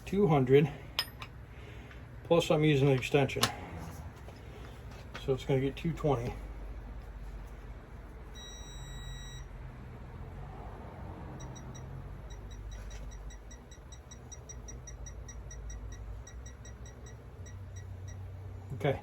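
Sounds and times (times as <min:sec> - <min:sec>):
torque wrench beeping: 0:08.4 - 0:09.4.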